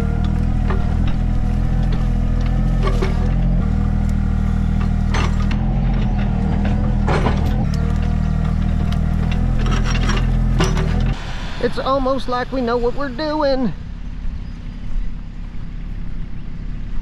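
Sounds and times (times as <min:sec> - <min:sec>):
diesel engine running: 0:00.0 - 0:17.0
metal attachment clanking: 0:00.2 - 0:11.2.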